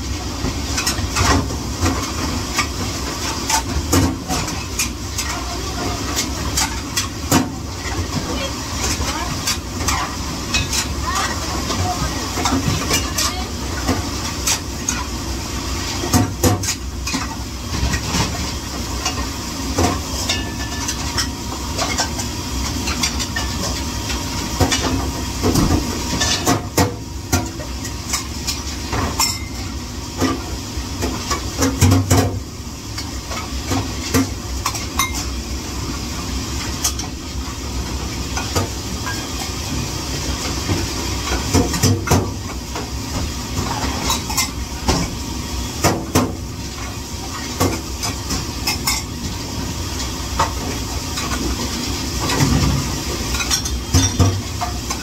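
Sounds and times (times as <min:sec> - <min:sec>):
dishes and cutlery clattering: 0:53.3 - 0:55.0.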